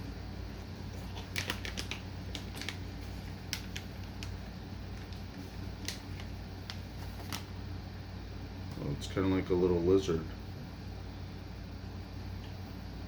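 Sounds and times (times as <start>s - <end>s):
steady low hum: 0.0s - 13.0s
plastic packaging crinkling: 0.8s - 7.6s.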